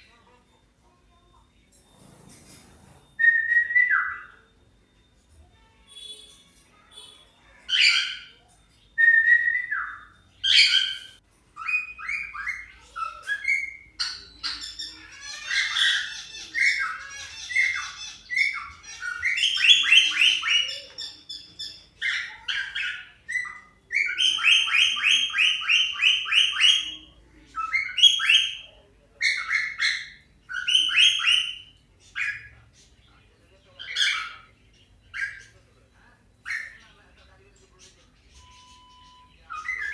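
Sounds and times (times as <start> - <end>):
cockatiels squawking and chirping: 5.4 - 35.8, 36.4 - 39.9.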